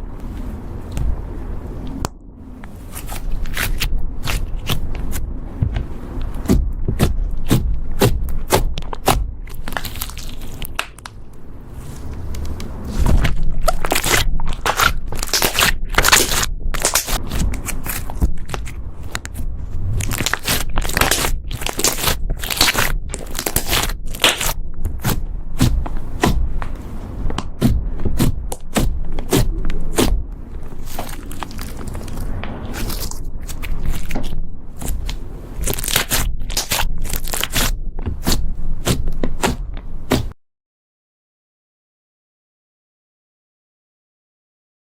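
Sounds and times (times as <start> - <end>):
slime crackling and clicking: 8.5 - 11.2, 13.6 - 19.4, 20.0 - 25.2, 30.8 - 39.0.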